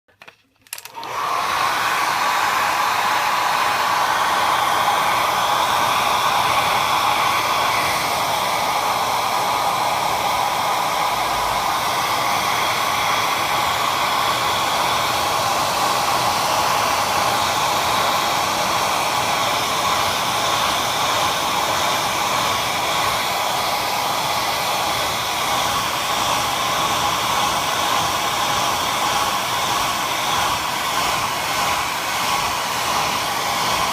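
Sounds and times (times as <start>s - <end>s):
hair dryer switch click: 0.7s - 1.5s
hair dryer blowing: 0.7s - 33.9s.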